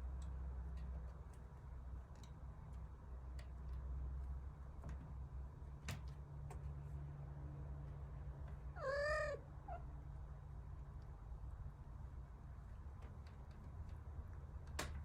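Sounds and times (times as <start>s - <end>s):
kitten meowing: 8.8s - 9.8s.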